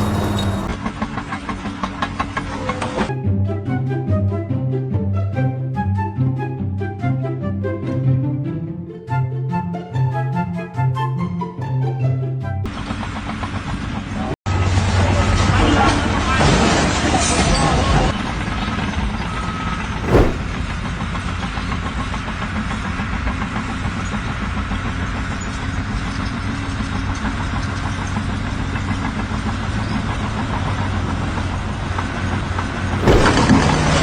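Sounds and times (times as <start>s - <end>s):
rough burst of noise: 20.0s - 20.6s, 33.0s - 33.5s
sharp knock: 20.0s - 20.6s, 33.0s - 33.5s.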